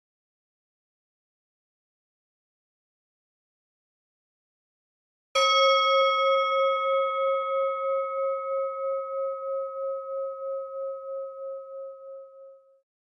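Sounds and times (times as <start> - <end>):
singing bowl ringing: 5.4 - 12.8.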